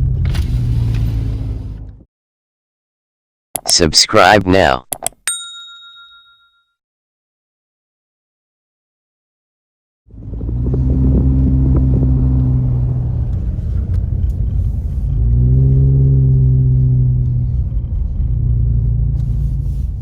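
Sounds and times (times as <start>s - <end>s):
car engine: 0.0s - 2.0s, 10.1s - 20.0s
road rumble: 0.0s - 2.1s, 10.1s - 20.0s.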